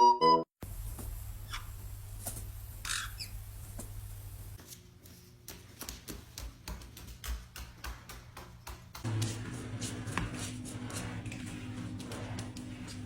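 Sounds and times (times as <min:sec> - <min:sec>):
parrot squawks: 0:02.8 - 0:03.3
steady low hum: 0:09.1 - 0:13.0.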